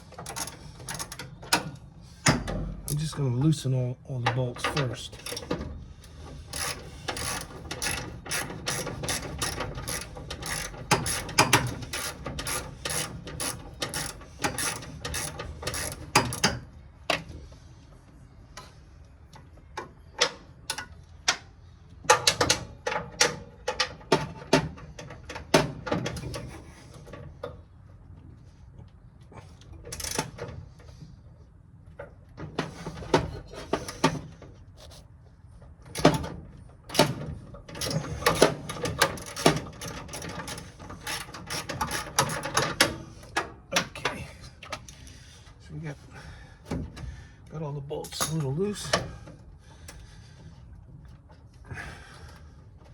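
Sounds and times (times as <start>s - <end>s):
ratchet wrench clicking: 6.5s - 16.6s.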